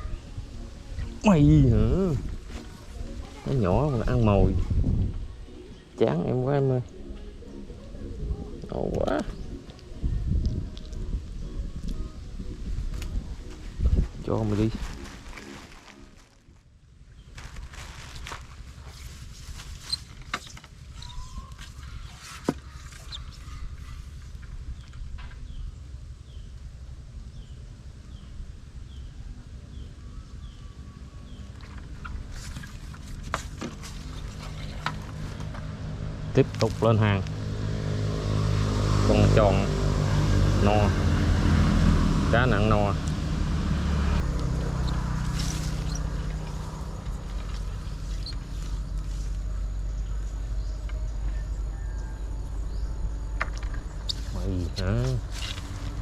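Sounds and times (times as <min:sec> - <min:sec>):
steady low rumble: 0:00.0 - 0:38.8, 0:39.6 - 0:56.0
low motor hum: 0:17.6 - 0:56.0.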